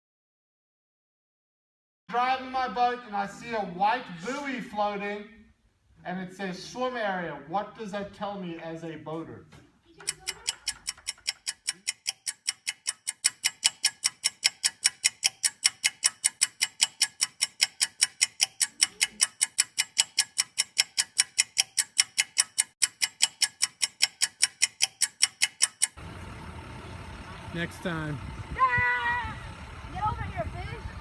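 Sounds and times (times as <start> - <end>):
speech: 2.1 - 5.4, 6.0 - 10.5
rapid clock-like ticking: 9.9 - 26.0.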